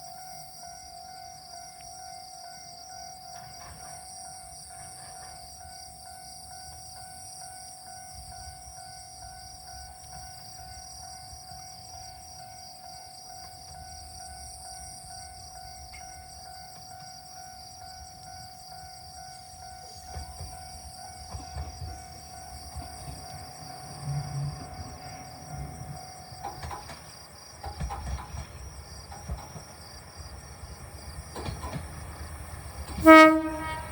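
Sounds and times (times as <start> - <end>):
insects buzzing: 14.5 - 33.9.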